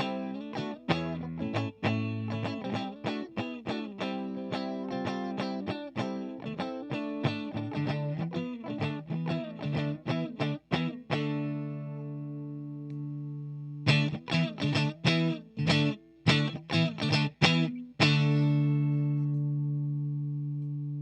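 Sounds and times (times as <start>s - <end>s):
overdriven electric guitar strumming: 0.0s - 21.0s.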